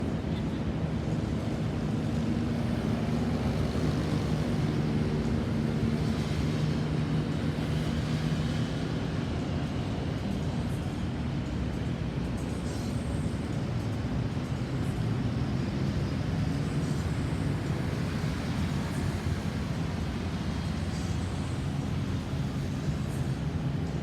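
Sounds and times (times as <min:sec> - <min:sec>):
road noise: 0:00.0 - 0:24.0.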